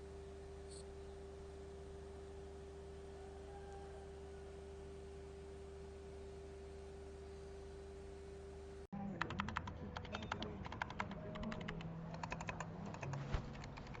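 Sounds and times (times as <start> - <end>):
steady hum and hiss: 0.0 - 9.5
mechanical keyboard typing: 9.2 - 14.0.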